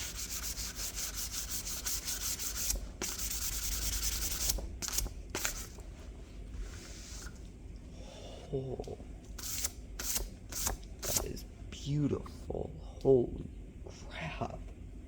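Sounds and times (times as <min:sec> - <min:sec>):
sandpaper rubbing on metal: 0:00.0 - 0:05.7.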